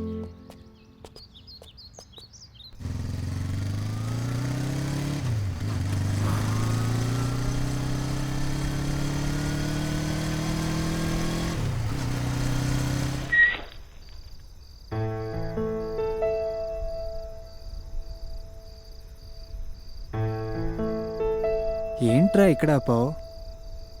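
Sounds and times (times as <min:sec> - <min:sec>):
motorcycle engine accelerating: 0:02.8 - 0:13.4.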